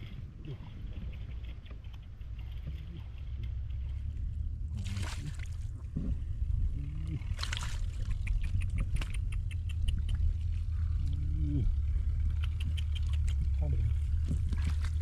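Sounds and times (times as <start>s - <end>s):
water splashing and sloshing: 0.0s - 6.5s, 7.2s - 9.1s, 13.0s - 15.0s
steady low rumble: 0.0s - 15.0s.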